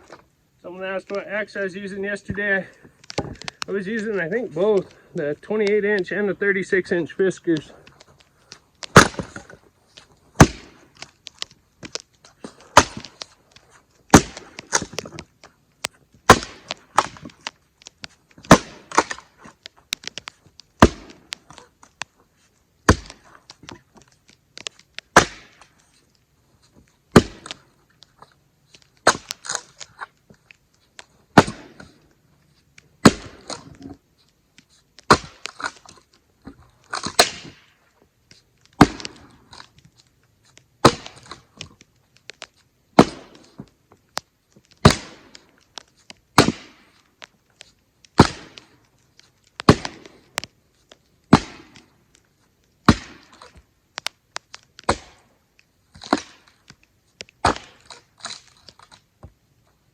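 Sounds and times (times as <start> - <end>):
axe striking firewood: 3.0 - 3.9, 8.8 - 22.1, 22.8 - 25.8, 27.1 - 27.6, 28.7 - 30.1, 31.0 - 32.0, 33.0 - 34.0, 35.0 - 37.8, 38.7 - 39.7, 40.8 - 42.4, 43.0 - 47.3, 48.1 - 50.5, 51.2 - 52.2, 52.8 - 55.3, 55.9 - 59.0.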